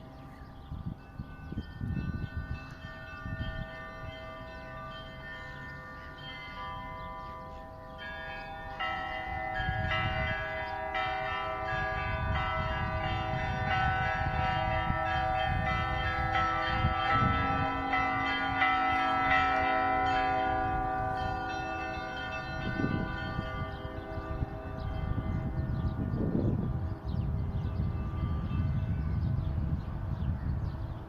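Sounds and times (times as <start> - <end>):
church bells ringing a peal: 0.0 - 31.0.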